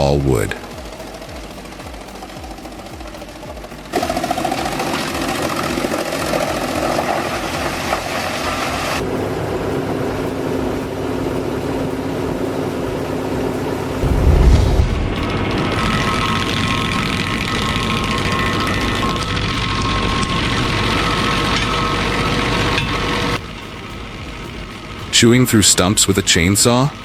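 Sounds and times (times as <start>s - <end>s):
wood chipper harsh noise: 0.4s - 9.2s, 14.0s - 27.0s
wood chipper engine hum: 0.6s - 12.6s, 14.0s - 27.0s
deep thump: 14.0s - 15.4s.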